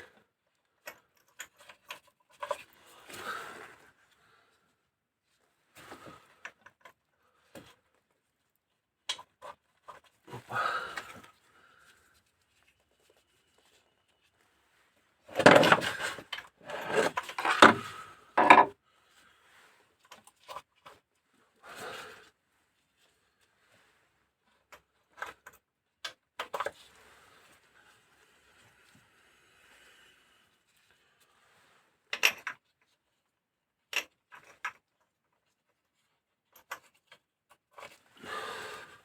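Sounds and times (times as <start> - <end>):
rubbing and scraping: 15.3 - 18.7.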